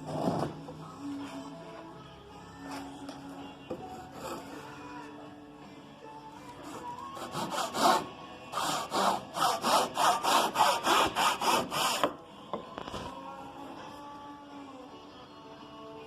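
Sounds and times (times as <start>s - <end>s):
hand saw cutting wood: 3.9s - 4.7s, 6.6s - 12.2s.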